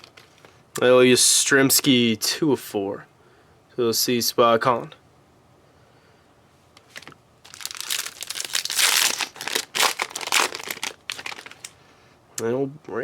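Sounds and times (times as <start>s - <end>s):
wrapper tearing and crinkling: 6.9s - 11.8s.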